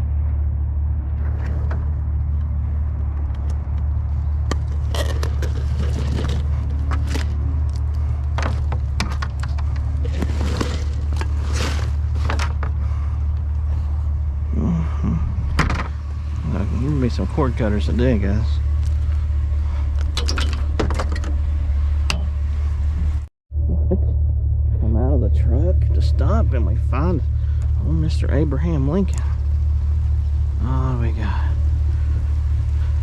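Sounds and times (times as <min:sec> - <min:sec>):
vehicle engine rumbling: 0:00.0 - 0:33.0
scrapes and knocks: 0:04.4 - 0:12.9.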